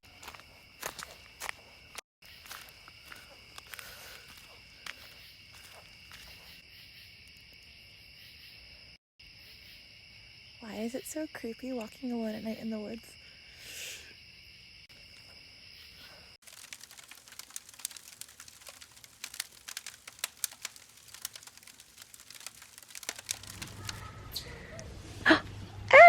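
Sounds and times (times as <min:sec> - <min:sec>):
night insects chirring: 0:00.1 - 0:24.4
crackling and clicking: 0:16.4 - 0:24.9.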